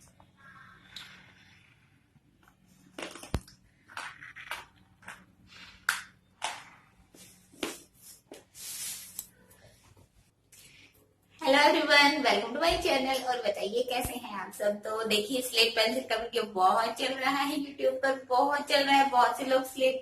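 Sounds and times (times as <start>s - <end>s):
person chewing crunchy objects: 2.3s - 6.8s.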